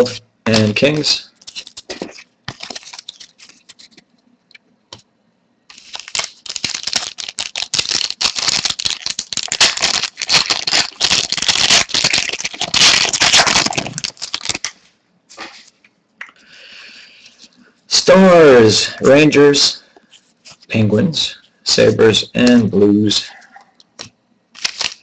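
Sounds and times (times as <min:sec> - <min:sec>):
foil wrapper crinkling: 0:00.5 - 0:04.1, 0:05.7 - 0:15.7, 0:24.0 - 0:25.0.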